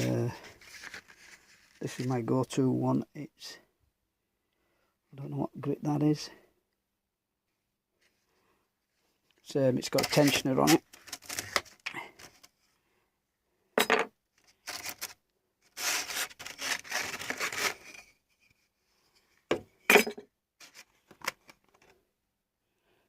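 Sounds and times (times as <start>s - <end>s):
scratchy abrasive rub: 15.8s - 18.0s.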